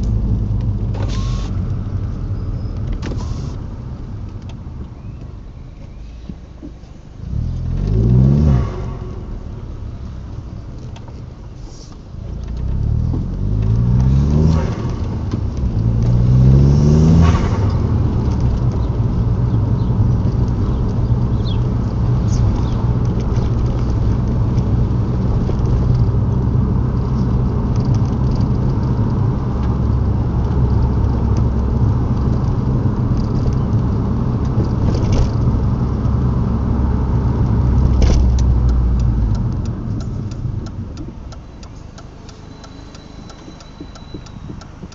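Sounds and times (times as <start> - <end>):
turbocharged engine revving: 7.2 - 9.9, 12.6 - 41.4.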